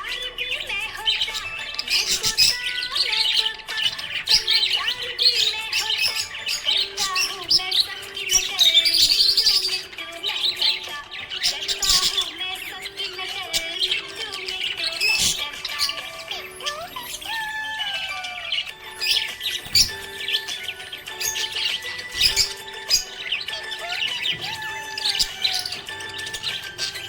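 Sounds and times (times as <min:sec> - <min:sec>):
budgerigar chirping and warbling: 0:00.0 - 0:27.0.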